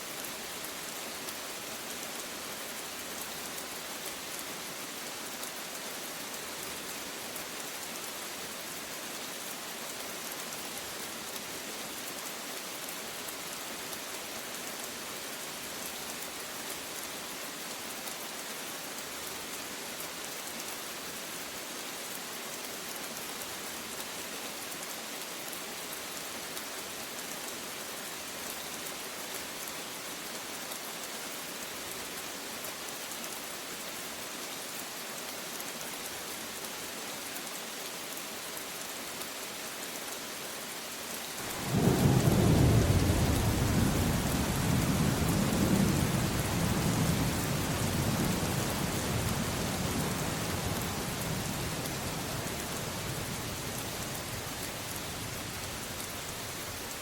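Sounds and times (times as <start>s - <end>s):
steady rain falling: 0.0s - 57.0s
low rumble of thunder: 41.5s - 55.8s.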